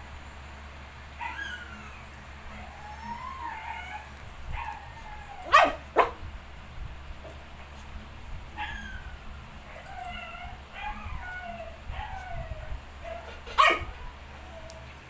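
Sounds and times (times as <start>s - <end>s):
puppies whimpering and squealing: 1.1s - 6.2s, 8.4s - 15.0s
puppy sharp yelps: 1.2s - 6.2s, 8.6s - 12.4s, 13.0s - 14.7s.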